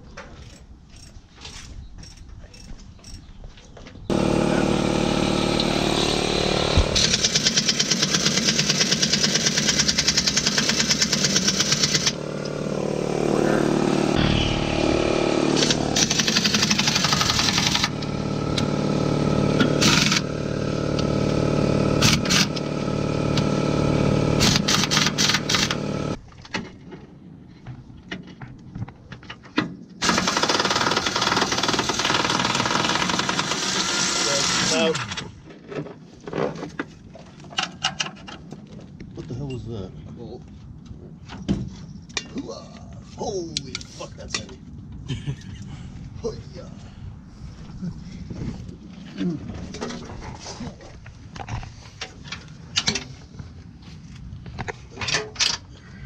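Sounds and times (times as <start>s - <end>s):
electric motor running: 4.1s - 26.2s, 30.0s - 35.1s.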